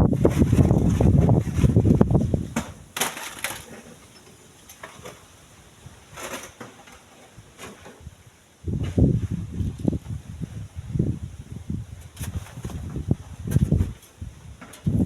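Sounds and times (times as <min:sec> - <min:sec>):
wind buffeting microphone: 0:00.0 - 0:03.0, 0:07.4 - 0:15.0
faint rustles and clicks: 0:12.0 - 0:15.0.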